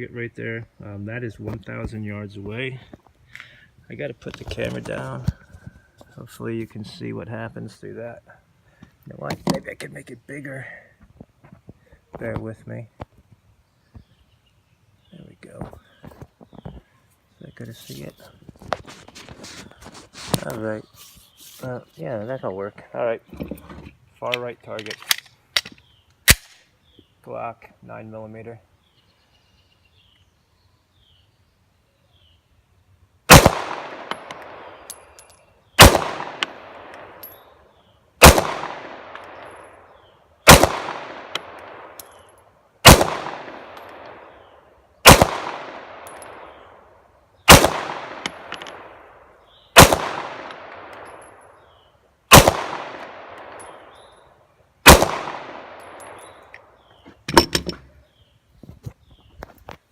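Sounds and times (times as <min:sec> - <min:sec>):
pistol shots echoing: 0:33.3 - 0:35.0, 0:35.8 - 0:37.2, 0:38.2 - 0:39.8, 0:40.4 - 0:42.2, 0:42.8 - 0:46.8, 0:47.5 - 0:49.2, 0:49.8 - 0:51.7, 0:52.3 - 0:54.0, 0:54.8 - 0:56.4.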